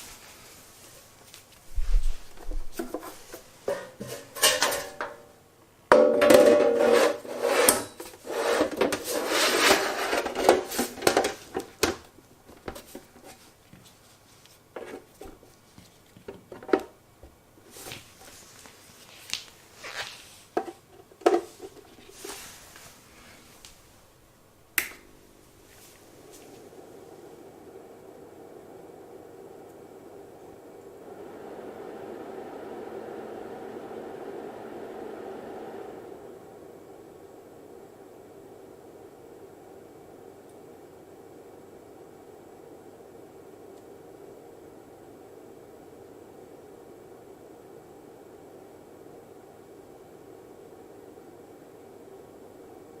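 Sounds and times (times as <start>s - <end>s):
tools and parts clattering: 3.7s - 5.2s.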